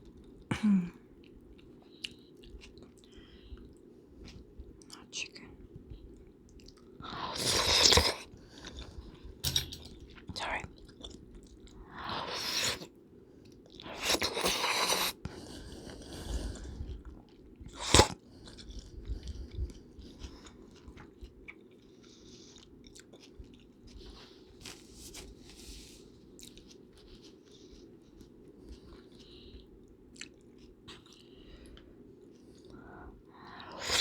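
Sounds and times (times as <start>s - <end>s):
close-miked eating sounds: 0.0s - 34.0s
soft chewing: 0.0s - 34.0s
steady low hum: 8.4s - 11.8s.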